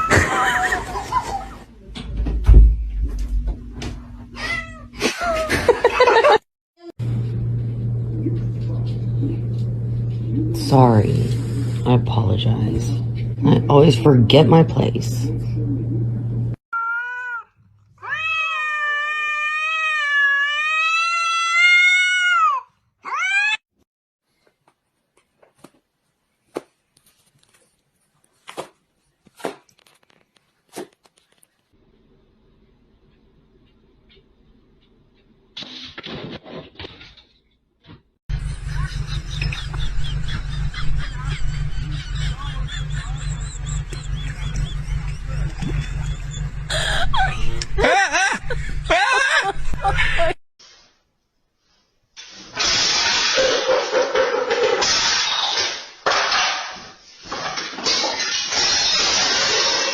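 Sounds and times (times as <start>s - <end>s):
cat meowing: 16.8s - 23.6s
birds calling: 38.3s - 47.0s
loud steady low rumble: 38.3s - 50.4s.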